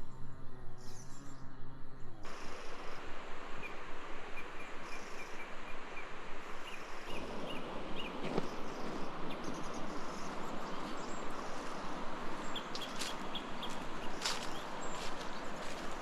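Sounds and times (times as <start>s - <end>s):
small bird chirping: 12.5s - 15.1s.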